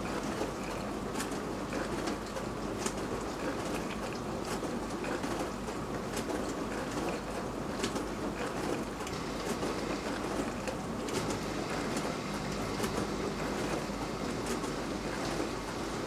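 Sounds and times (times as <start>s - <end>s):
dishwasher churning: 6.7s - 16.0s
water spraying inside tub: 9.1s - 16.0s.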